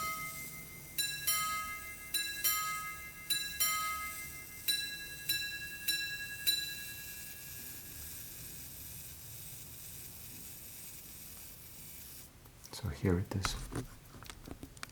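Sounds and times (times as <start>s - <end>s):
pocket watch gongs striking: 0.0s - 8.1s.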